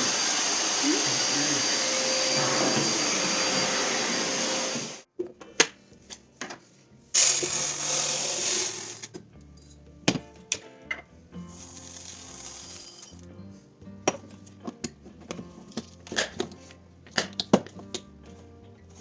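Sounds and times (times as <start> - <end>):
vacuum cleaner running: 0.0 - 5.1.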